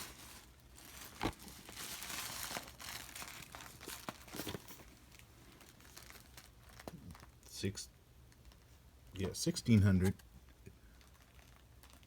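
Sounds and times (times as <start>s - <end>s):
cardboard and packing crinkling: 0.0s - 7.4s, 10.8s - 12.0s.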